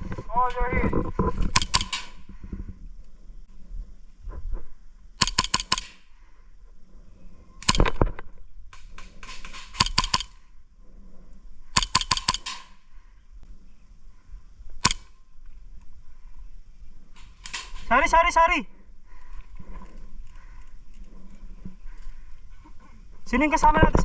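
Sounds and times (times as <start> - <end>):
airsoft guns firing: 1.5 - 2.2, 5.2 - 6.0, 7.6 - 8.1, 8.9 - 10.4, 11.8 - 12.8.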